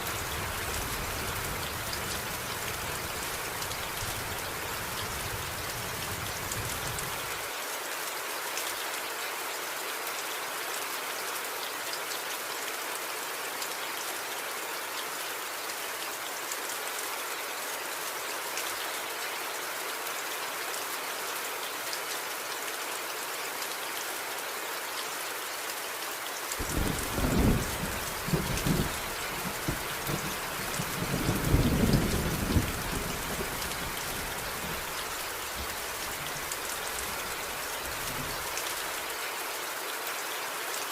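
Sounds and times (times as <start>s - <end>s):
heavy rain falling: 0.0s - 10.7s, 11.4s - 40.9s
thunder cracking and rumbling: 26.6s - 34.9s.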